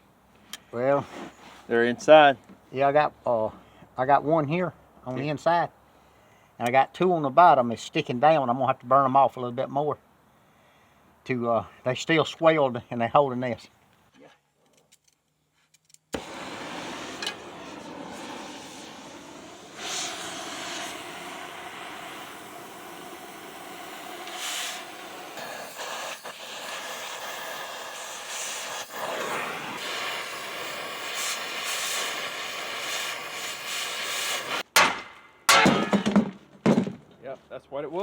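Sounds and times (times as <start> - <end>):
cutting torch hissing: 16.1 - 34.7.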